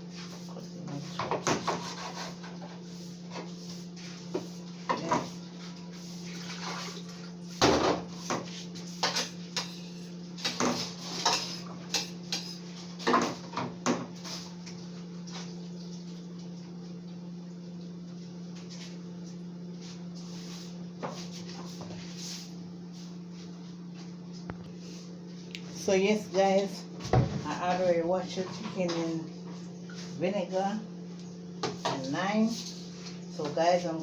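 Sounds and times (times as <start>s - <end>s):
steady low hum: 0.0s - 34.0s
knife and dishes clattering: 9.0s - 13.4s.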